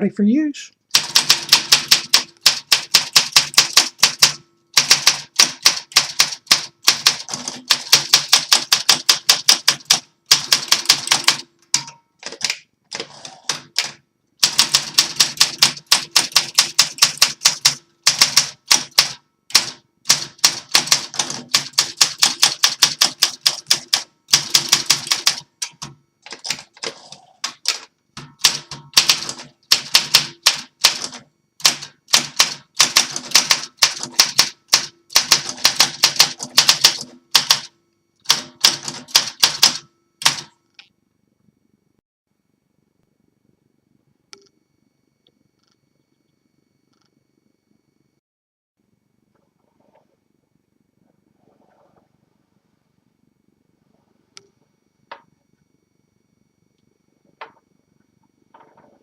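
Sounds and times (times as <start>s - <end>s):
manual typewriter typing: 0.9s - 40.6s.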